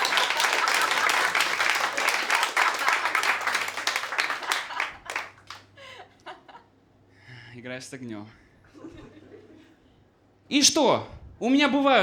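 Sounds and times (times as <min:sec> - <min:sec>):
audience applauding: 0:00.0 - 0:05.8.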